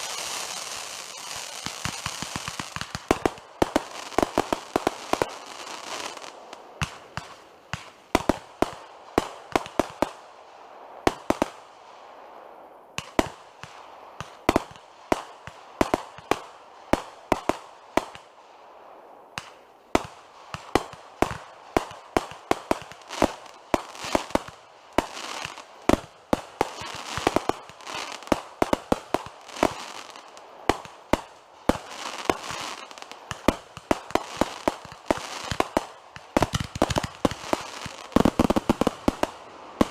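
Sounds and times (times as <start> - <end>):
fireworks bangs and pops: 0.0 - 10.2, 11.0 - 11.6, 13.0 - 18.3, 19.4 - 39.9
fireworks crackle: 0.0 - 10.4, 19.4 - 39.9.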